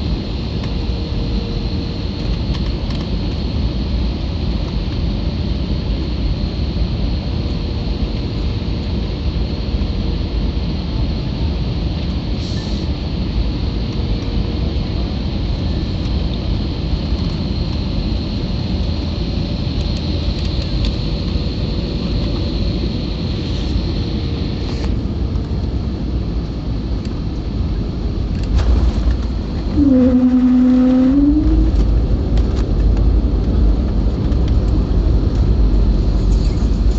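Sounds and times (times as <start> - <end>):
airliner cabin rumble: 0.0 - 36.9
faint high whine: 27.7 - 32.0.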